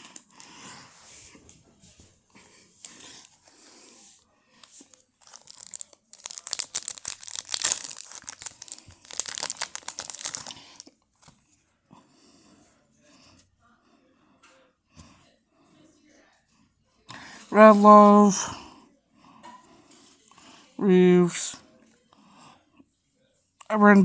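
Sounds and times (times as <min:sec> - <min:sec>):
wrapper and cards rustling: 0:02.6 - 0:11.4
wrapper tearing and crackling: 0:04.6 - 0:10.9.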